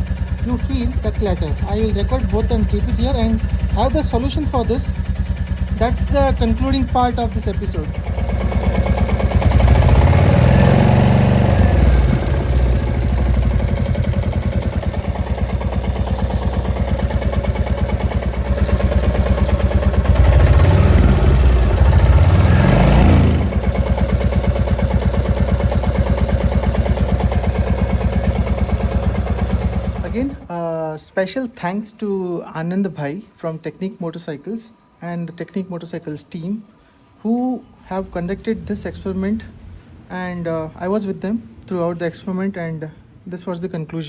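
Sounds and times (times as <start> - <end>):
motorcycle engine idling and revving: 0.0 - 30.5.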